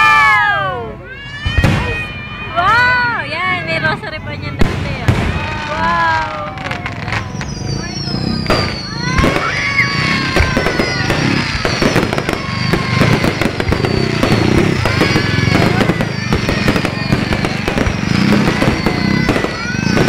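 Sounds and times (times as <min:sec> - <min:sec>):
fireworks bangs and crackles: 0:01.1 - 0:20.0
whistling firework shells: 0:04.6 - 0:20.0.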